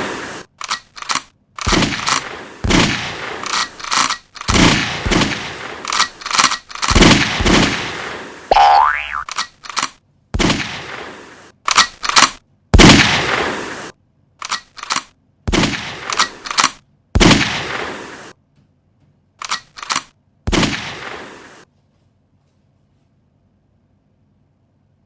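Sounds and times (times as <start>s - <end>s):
echoing gunshots: 0.0s - 0.5s, 1.6s - 9.3s, 10.4s - 14.0s, 15.5s - 18.4s, 20.5s - 21.6s.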